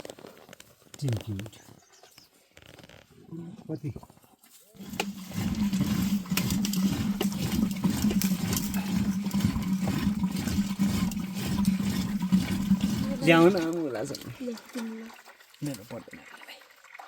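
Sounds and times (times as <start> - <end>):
running water rushing: 4.8 - 17.0.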